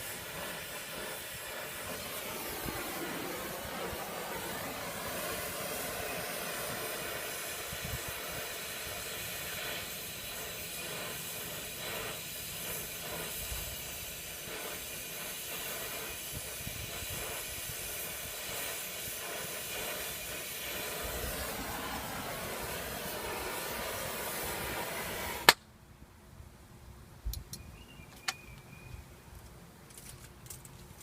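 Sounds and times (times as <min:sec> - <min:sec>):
torch flame hissing: 0:00.0 - 0:25.6.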